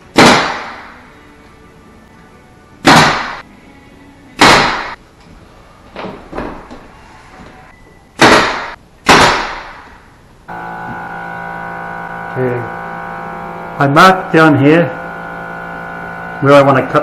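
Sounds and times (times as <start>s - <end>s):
loud sharp bangs: 0.1s - 0.9s, 2.8s - 3.4s, 4.4s - 5.0s, 8.2s - 9.9s.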